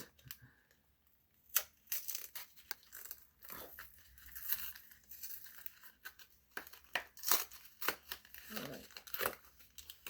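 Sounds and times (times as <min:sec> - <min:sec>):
foil wrapper tearing and crinkling: 0:01.4 - 0:10.0.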